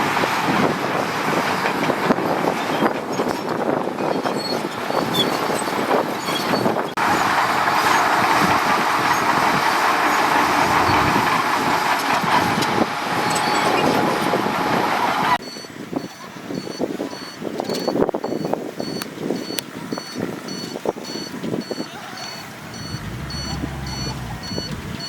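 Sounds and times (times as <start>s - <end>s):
faint reversing beeps: 15.4s - 25.0s
earthmoving machinery rattling: 22.4s - 25.0s.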